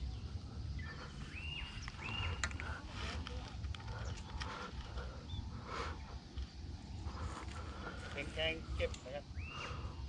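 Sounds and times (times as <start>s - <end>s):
bird whistled calls: 0.8s - 2.4s, 9.3s - 9.8s.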